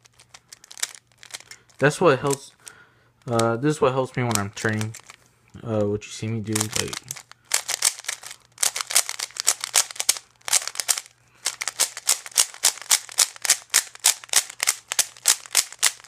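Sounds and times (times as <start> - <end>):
plastic puzzle cube clacking: 0.0 - 5.2, 5.8 - 16.0.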